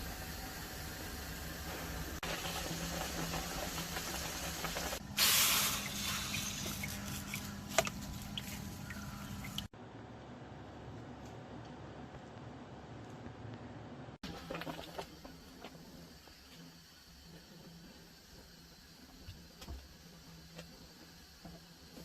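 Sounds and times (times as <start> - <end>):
spraying hiss: 0.0 - 7.5.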